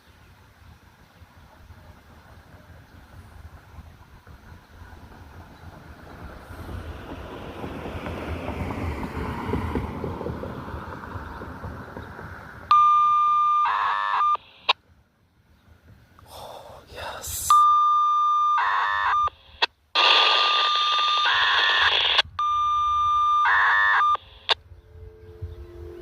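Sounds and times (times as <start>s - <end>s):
passing vehicle rushing: 3.5s - 12.8s
radio beep tone: 12.7s - 14.7s, 17.4s - 24.6s
warbling data burst: 18.3s - 24.6s
radio click: 18.6s - 22.3s.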